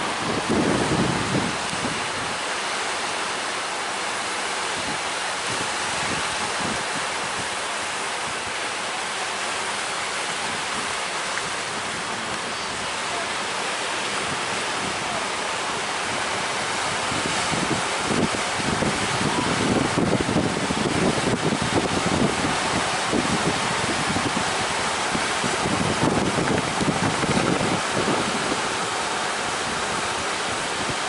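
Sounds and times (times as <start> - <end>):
strong wind: 0.0 - 31.0
surf at sea: 0.0 - 31.0.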